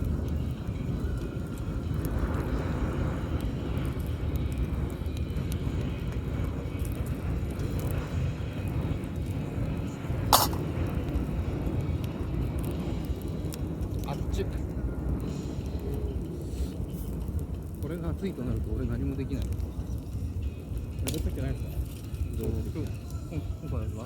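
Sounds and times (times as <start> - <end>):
bonfire crackling: 0.0 - 24.0
low rumble of beach: 0.0 - 24.0
sharp pop: 10.3 - 10.8.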